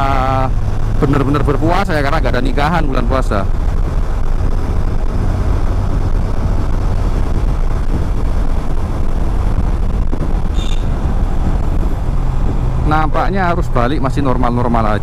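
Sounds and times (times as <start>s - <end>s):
motorcycle road noise: 0.0s - 15.0s
wind buffeting on microphone: 0.0s - 15.0s
short high chirp: 10.5s - 10.9s.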